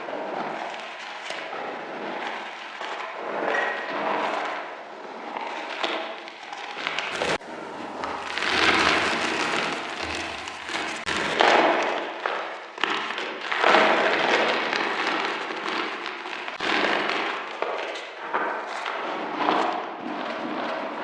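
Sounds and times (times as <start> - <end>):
chalk crunching and crumbling: 7.1 - 11.4.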